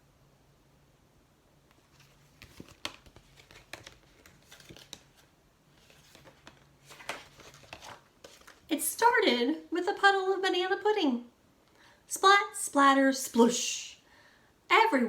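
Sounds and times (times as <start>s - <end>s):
paper rustling and crinkling: 1.7s - 8.7s.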